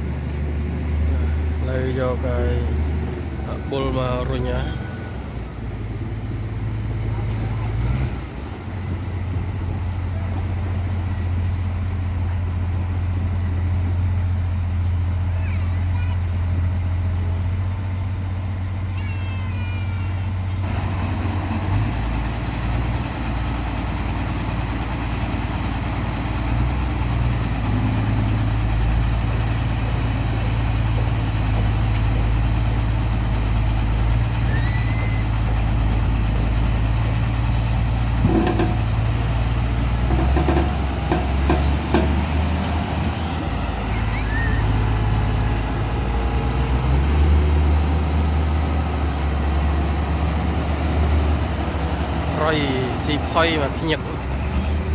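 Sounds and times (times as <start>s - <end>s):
diesel engines droning: 0.0s - 54.9s
knocks and clanks: 38.0s - 43.1s.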